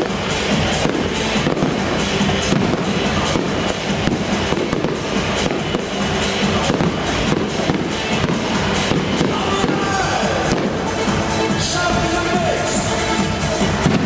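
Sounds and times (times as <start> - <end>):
fireworks crackling pops: 0.0 - 14.0
loud music with drum beat: 0.0 - 14.0.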